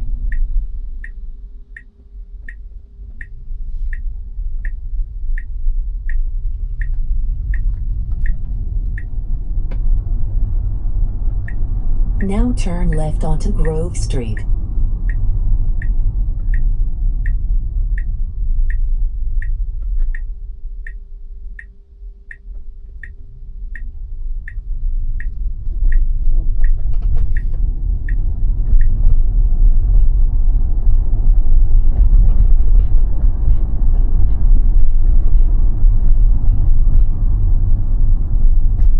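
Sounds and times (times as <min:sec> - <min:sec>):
car road rumble: 0:00.0 - 0:13.9, 0:22.5 - 0:38.9
turn signal ticking: 0:00.3 - 0:01.2, 0:01.8 - 0:02.6, 0:03.2 - 0:09.2, 0:15.8 - 0:17.4, 0:23.8 - 0:26.8.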